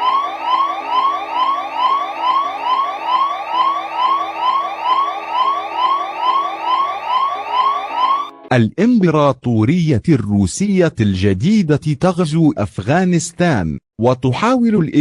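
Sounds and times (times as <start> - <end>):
electronic alarm siren sweeps: 0.0 - 8.5.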